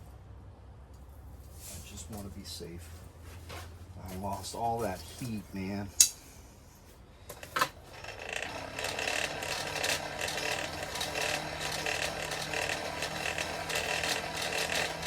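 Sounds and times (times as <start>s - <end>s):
forge blower whirring: 7.5s - 15.0s.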